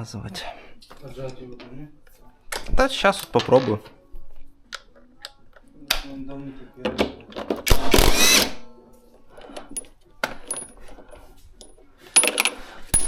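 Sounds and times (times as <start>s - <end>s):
power drill whirring: 7.8s - 8.6s.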